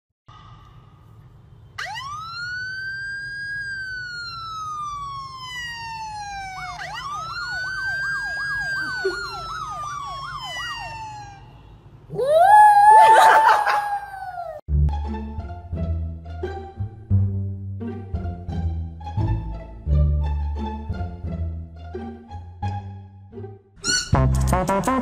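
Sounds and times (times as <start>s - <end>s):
emergency vehicle siren wailing: 1.8s - 14.6s.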